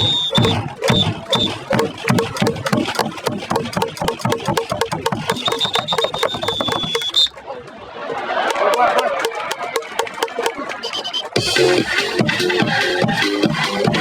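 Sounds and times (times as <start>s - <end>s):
crowd chanting: 0.0s - 3.3s
crowd clapping in rhythm: 0.0s - 7.3s, 8.2s - 10.8s.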